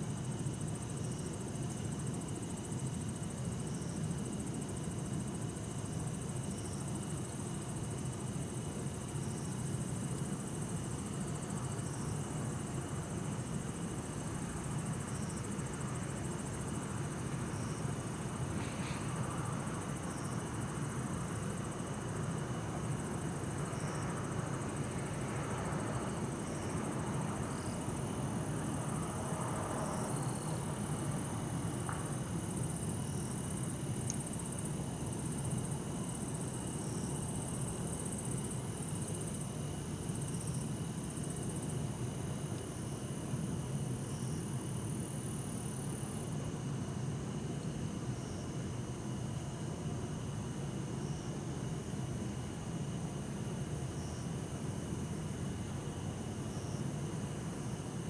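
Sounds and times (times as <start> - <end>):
crickets chirping: 0.0 - 58.0
distant city traffic rumble: 18.4 - 38.5.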